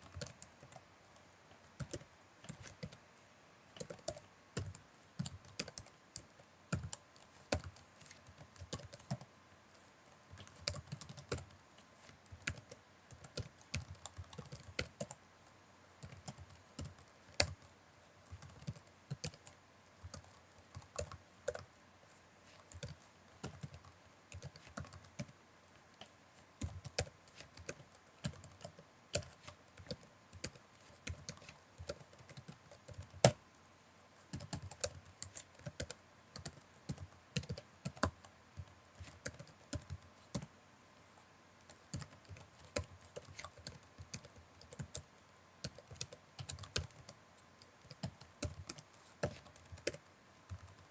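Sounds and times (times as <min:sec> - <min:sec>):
computer keyboard typing: 0:00.0 - 0:03.0, 0:03.8 - 0:09.3, 0:10.2 - 0:15.2, 0:16.0 - 0:33.4, 0:34.3 - 0:40.5, 0:41.6 - 0:50.9.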